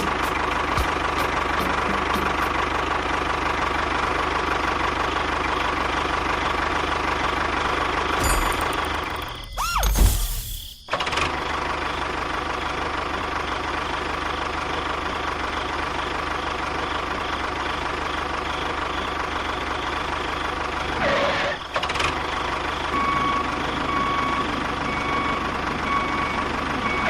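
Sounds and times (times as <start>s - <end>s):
construction vehicle engine running: 0.0s - 27.0s
reversing beeper: 8.2s - 11.2s, 22.8s - 27.0s.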